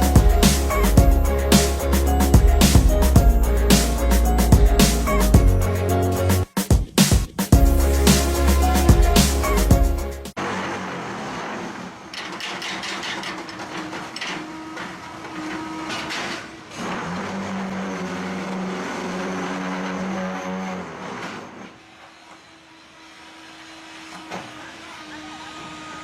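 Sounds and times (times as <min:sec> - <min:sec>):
machinery humming: 0:00.0 - 0:06.4.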